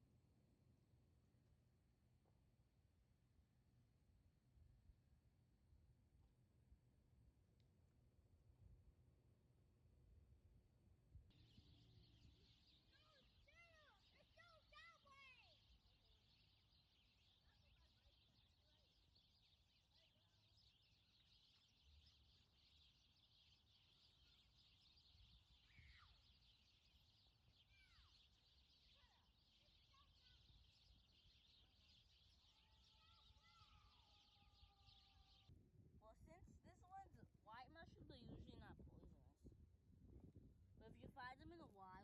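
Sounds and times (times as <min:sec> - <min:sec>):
faint bird chirps: 0:11.3 - 0:42.0.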